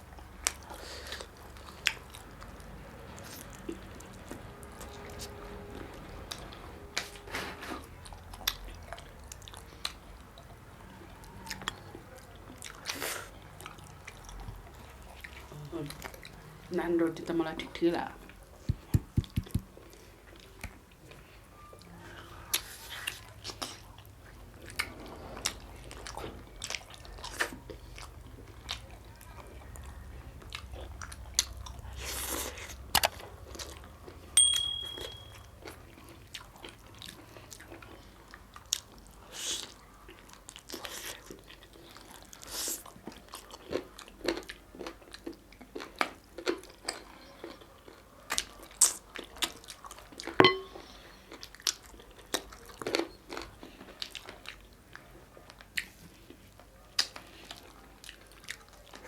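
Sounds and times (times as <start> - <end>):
person chewing food: 0.0 - 16.7, 18.2 - 59.0
short high clinks: 34.4 - 35.4.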